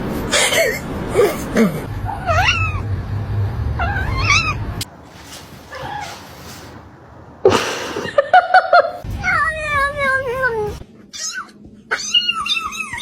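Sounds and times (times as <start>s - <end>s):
low steady rumble: 0.7s - 7.5s
kitten meowing and yowling: 2.1s - 2.8s, 3.8s - 4.6s, 11.1s - 13.0s.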